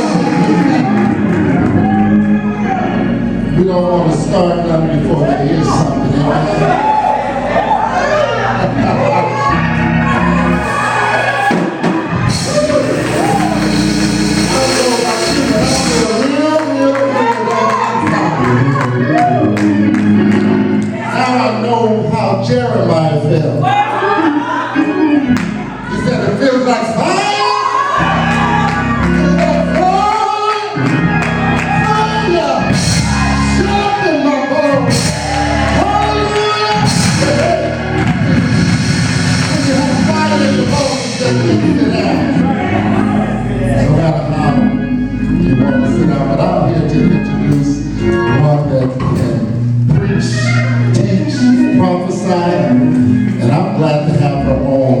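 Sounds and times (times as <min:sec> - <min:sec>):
gospel band playing: 0:00.0 - 0:55.0.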